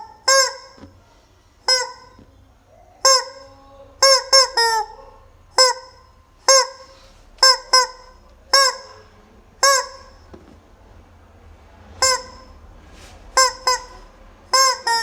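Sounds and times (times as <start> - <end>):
rubber chicken toy squawking: 0.0 - 0.8, 1.6 - 2.2, 3.0 - 5.0, 5.6 - 10.3, 12.0 - 12.6, 13.4 - 15.0.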